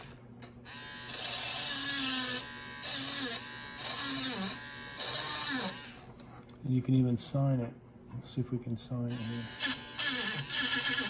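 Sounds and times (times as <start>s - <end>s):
engraving pen buzzing: 0.0s - 6.2s, 9.1s - 11.0s.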